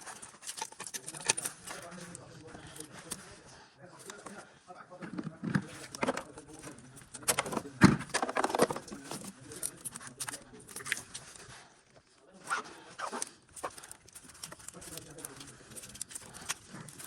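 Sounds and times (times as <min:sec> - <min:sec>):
tools and parts clicking and rattling: 0:00.0 - 0:03.2, 0:05.1 - 0:11.5, 0:13.1 - 0:17.0.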